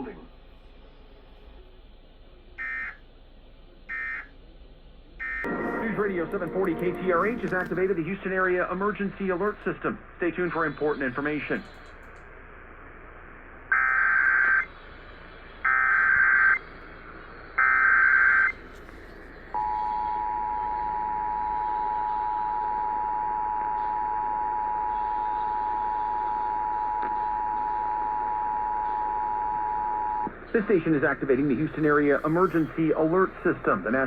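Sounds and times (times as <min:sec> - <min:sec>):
steady two-tone attention signal: 0:05.4 - 0:08.0.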